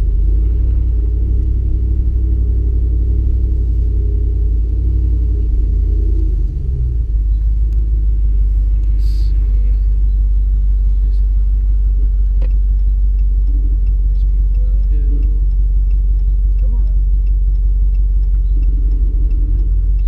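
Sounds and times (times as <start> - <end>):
car engine exhaust rumble: 0.0 - 20.0.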